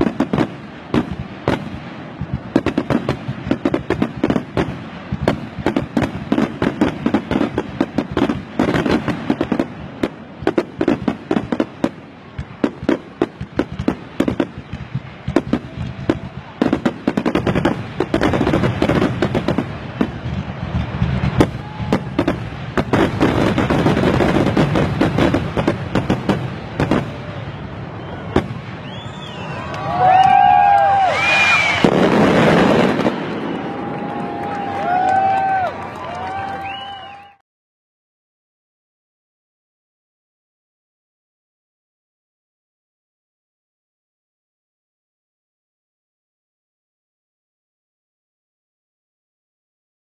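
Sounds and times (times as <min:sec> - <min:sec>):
fireworks bangs and crackling: 0:00.0 - 0:37.4.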